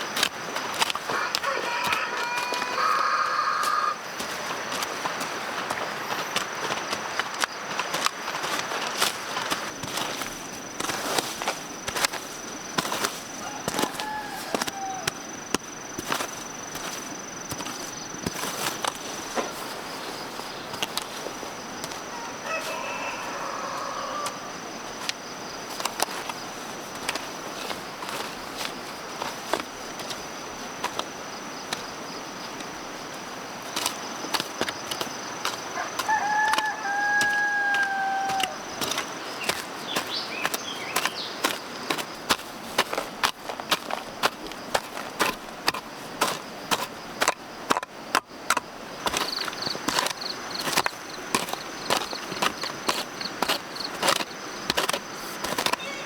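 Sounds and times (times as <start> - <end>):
rooster crowing: 1.1 - 4.0, 13.4 - 15.2, 22.0 - 24.6, 35.7 - 38.8, 55.7 - 56.0
faint high tone: 55.8 - 56.0.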